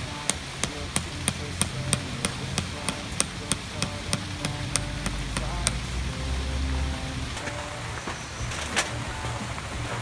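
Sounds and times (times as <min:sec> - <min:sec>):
sharp metallic taps: 0:00.0 - 0:06.2.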